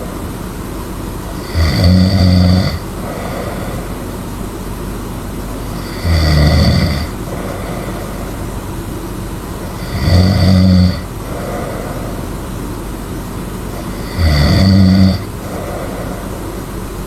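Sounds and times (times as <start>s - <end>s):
steady background hiss: 0.0s - 17.0s
person snoring loudly: 1.4s - 4.2s, 5.7s - 8.6s, 9.6s - 12.4s, 13.7s - 16.8s.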